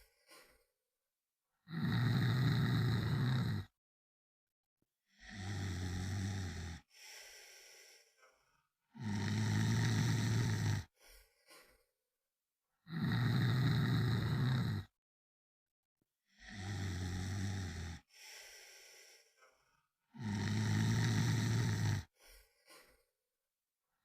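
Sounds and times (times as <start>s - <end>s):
quiet breath: 0.0s - 0.8s, 5.1s - 11.9s, 16.3s - 23.2s
person snoring: 1.7s - 3.7s, 5.1s - 8.1s, 9.0s - 11.0s, 12.9s - 15.0s, 16.3s - 19.4s, 20.2s - 22.2s.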